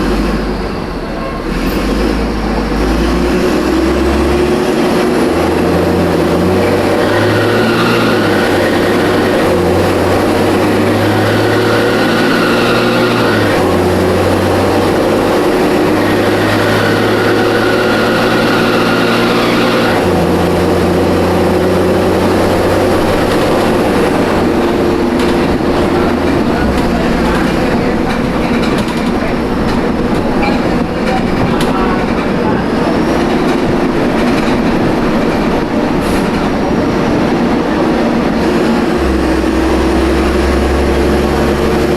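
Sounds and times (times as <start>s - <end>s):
bus diesel engine running: 0.0s - 41.9s.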